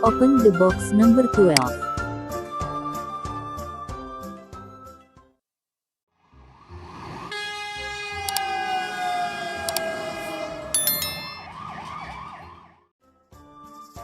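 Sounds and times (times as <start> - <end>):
emergency siren wailing: 6.6 - 12.9.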